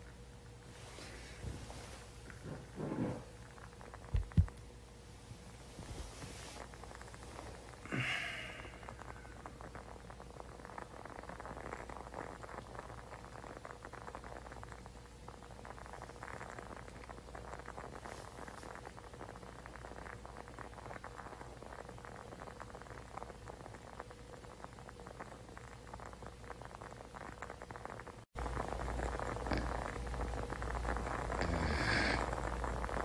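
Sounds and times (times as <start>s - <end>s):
steady low hum: 0.0s - 33.0s
man snoring softly: 7.7s - 9.4s, 29.4s - 29.9s, 31.1s - 33.0s.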